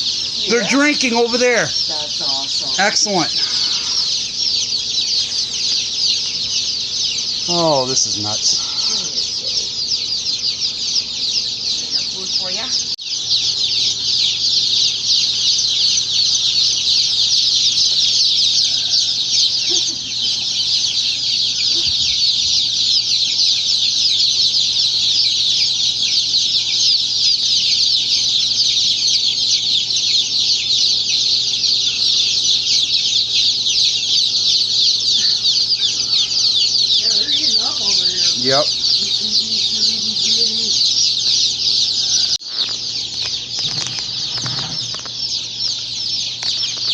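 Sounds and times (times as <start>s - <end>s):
faint steady hum: 0.0s - 12.9s
chicks peeping: 0.0s - 46.9s.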